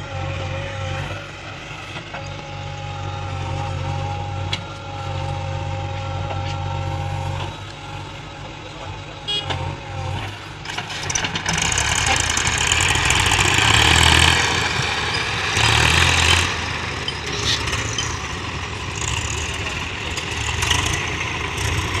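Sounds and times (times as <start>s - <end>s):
heavy vehicle engine rumbling: 0.0s - 22.0s.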